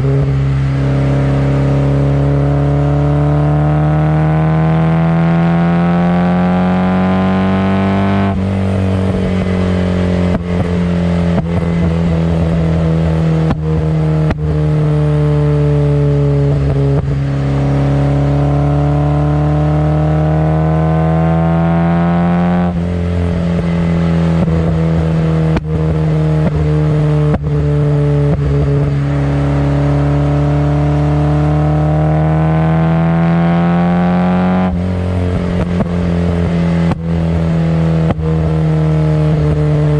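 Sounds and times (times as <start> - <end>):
car engine revving: 0.0 - 39.9
exhaust pops and crackles: 8.3 - 14.8, 22.7 - 27.6, 34.7 - 38.6.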